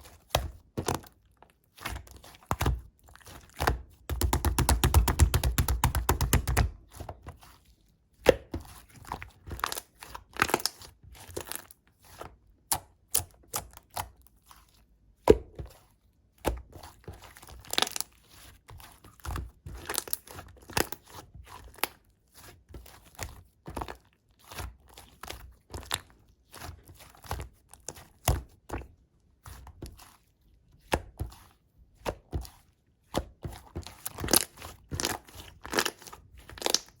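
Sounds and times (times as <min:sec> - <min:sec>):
slime crackling and popping: 0:34.2 - 0:37.0.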